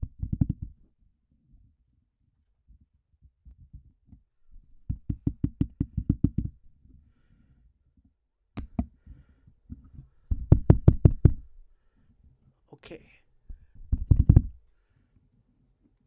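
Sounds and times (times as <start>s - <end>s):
fingers tapping on microphone: 0.0s - 0.8s, 3.5s - 6.6s, 8.6s - 9.0s, 9.7s - 11.6s, 13.5s - 14.6s.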